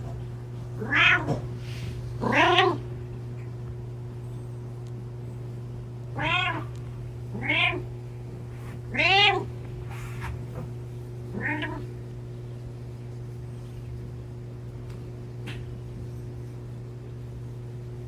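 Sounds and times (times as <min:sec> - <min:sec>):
cat meowing: 0:00.8 - 0:01.4, 0:02.2 - 0:02.8, 0:06.1 - 0:06.7, 0:07.3 - 0:07.9, 0:08.9 - 0:09.5, 0:11.3 - 0:11.9.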